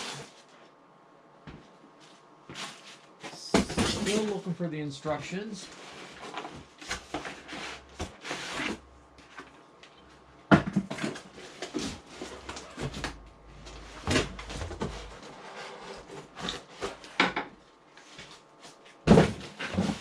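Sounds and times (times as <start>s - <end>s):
cardboard rustling and scraping: 0.0s - 0.7s, 2.0s - 4.6s, 5.7s - 9.6s, 10.9s - 17.2s, 18.0s - 20.0s.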